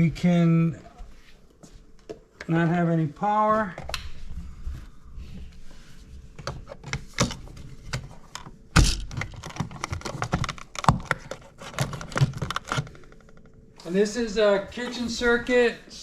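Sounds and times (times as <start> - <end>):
clicks and taps handling wiring: 9.2 - 13.5.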